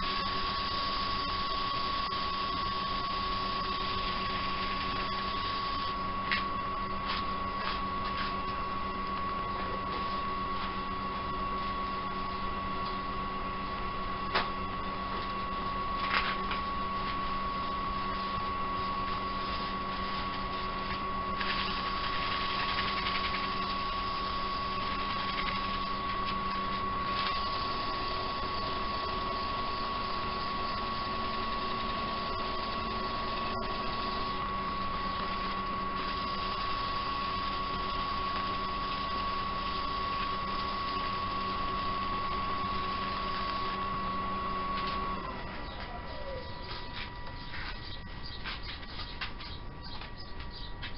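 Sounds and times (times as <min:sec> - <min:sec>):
wood lathe motor whine: 0:00.0 - 0:49.1.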